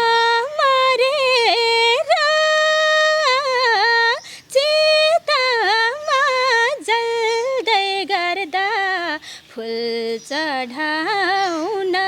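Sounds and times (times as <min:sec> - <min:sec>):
woman singing unaccompanied: 0:00.0 - 0:12.0.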